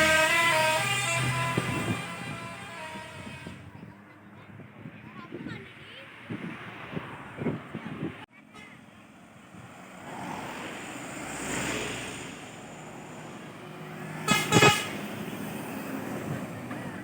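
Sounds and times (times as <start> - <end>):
musical air horn toots: 0.0 - 3.7, 14.2 - 15.1
traffic noise: 0.0 - 17.0.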